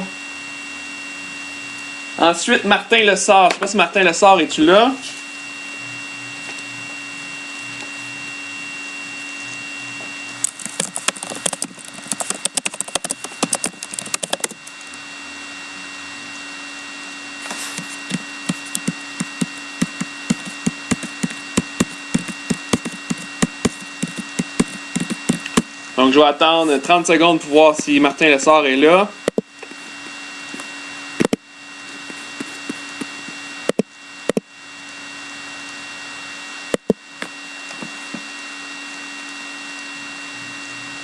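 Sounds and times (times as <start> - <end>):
electrical hum: 0.0 - 41.0
sharp clicks and light taps: 10.4 - 14.6, 18.1 - 25.7.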